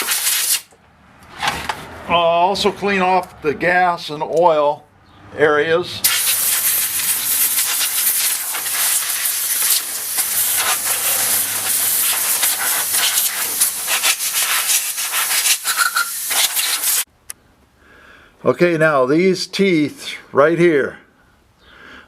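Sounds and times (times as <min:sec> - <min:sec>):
pressurized spray hissing: 0:00.0 - 0:00.7, 0:06.0 - 0:17.1.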